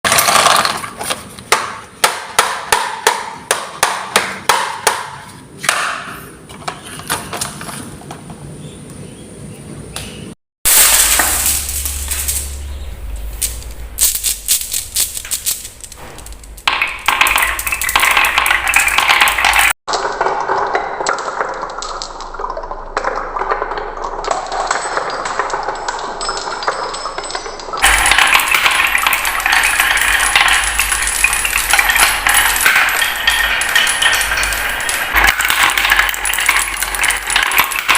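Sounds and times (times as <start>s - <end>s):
marbles clacking on wooden track: 0.1s - 1.2s, 13.4s - 37.9s
low rumble: 10.7s - 18.7s.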